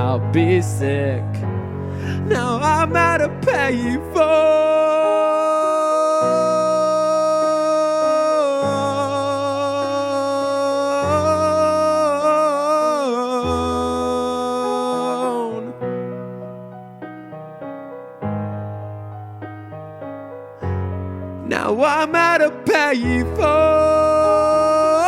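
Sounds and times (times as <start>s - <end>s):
piano chords: 0.0s - 25.0s
person singing long note: 2.1s - 15.8s.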